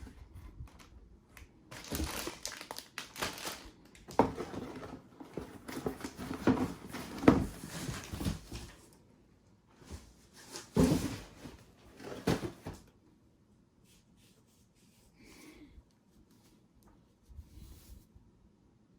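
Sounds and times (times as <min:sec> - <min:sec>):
plastic packaging rustling: 0:01.7 - 0:08.8.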